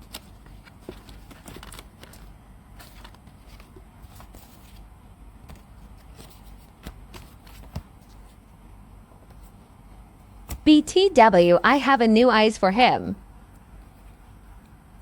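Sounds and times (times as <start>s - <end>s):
paper rustling and folding: 0.0s - 8.5s.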